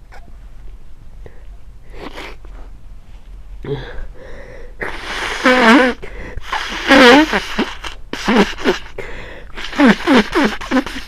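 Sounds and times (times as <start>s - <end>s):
person breathing in noisily: 3.6s - 6.7s, 8.8s - 9.8s
person sneezing loudly: 4.8s - 11.0s.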